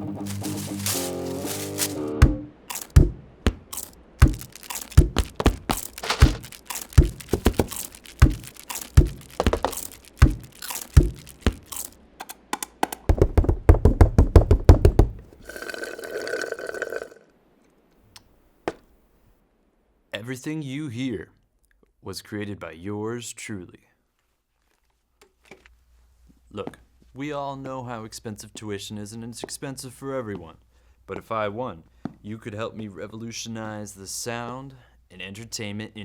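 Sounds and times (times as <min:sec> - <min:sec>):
fast thumps: 0:00.4 - 0:15.4
knocks and thuds: 0:01.4 - 0:12.0, 0:12.8 - 0:15.3.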